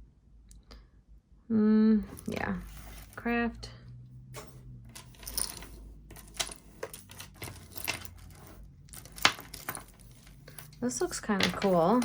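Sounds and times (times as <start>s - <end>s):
jewelry chain and beads clinking: 2.1s - 3.3s, 4.3s - 12.0s.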